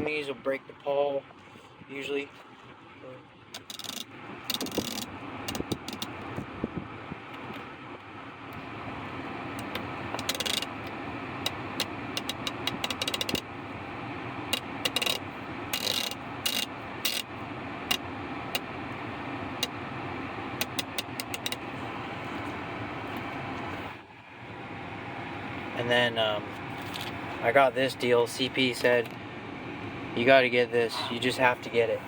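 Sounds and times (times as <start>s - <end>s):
ratchet clicking: 3.6s - 6.1s, 10.2s - 10.7s, 11.4s - 13.4s, 14.5s - 17.3s, 20.6s - 21.6s.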